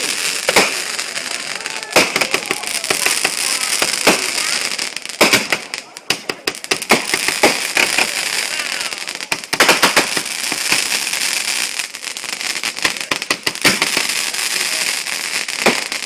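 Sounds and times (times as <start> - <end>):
fireworks crackling and banging: 0.0 - 16.0.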